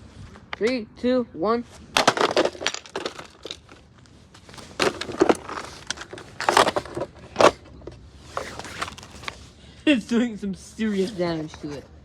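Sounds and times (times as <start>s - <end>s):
coffee maker being smashed: 2.0s - 3.8s, 4.5s - 7.6s
plastic cracking and crunching: 2.0s - 3.8s, 4.5s - 7.6s, 8.4s - 9.4s.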